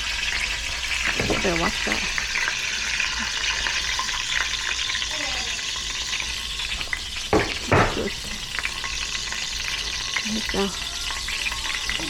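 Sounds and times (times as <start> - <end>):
oil sizzling in a pan: 0.0 - 12.0
loud knocks: 1.1 - 2.0, 7.3 - 8.5.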